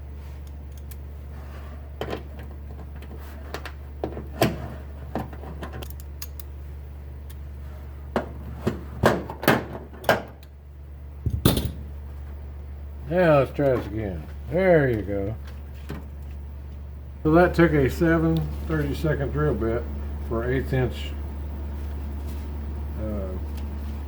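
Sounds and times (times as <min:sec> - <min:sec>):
steady low hum: 0:00.0 - 0:24.0
clicks of small parts and tools: 0:00.4 - 0:01.0, 0:05.6 - 0:06.5.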